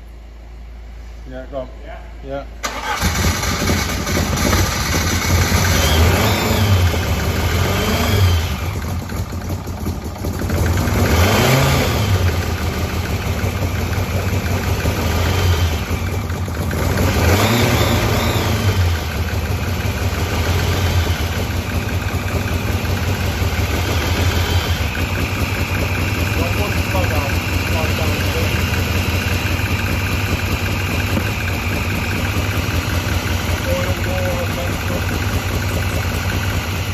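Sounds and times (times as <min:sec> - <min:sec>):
car engine revving: 0:02.6 - 0:09.6, 0:10.2 - 0:36.9.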